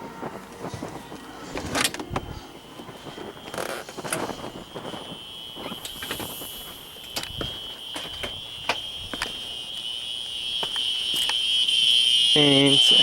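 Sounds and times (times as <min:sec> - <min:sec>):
high-pitched fire alarm tone: 0:00.0 - 0:13.0.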